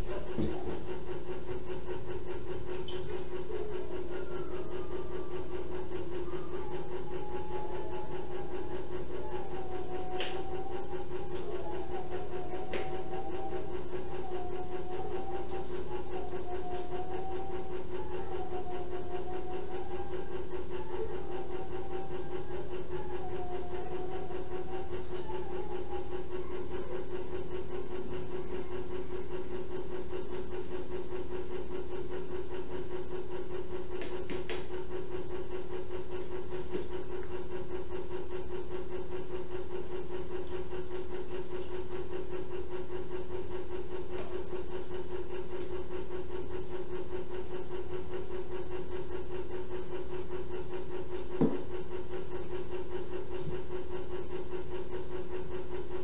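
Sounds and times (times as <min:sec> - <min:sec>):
room hum with hiss: 0:00.0 - 0:56.0.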